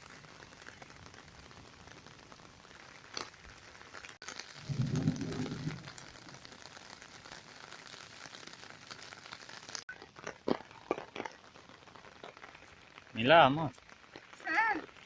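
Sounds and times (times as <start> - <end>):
rain pattering: 0.0 - 15.0
low rumble: 4.6 - 6.2.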